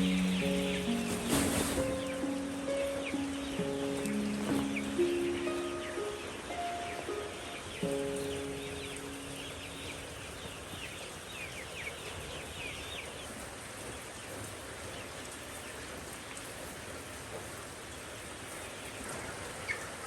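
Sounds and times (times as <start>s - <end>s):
chicks peeping: 0.0s - 20.0s
steady rain: 0.0s - 20.0s.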